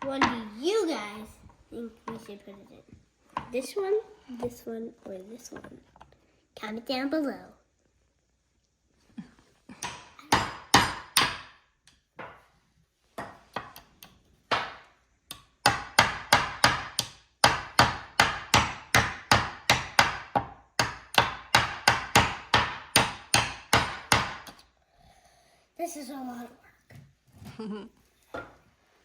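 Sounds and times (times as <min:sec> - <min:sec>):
hammer driving nail into wood: 0:14.5 - 0:24.6.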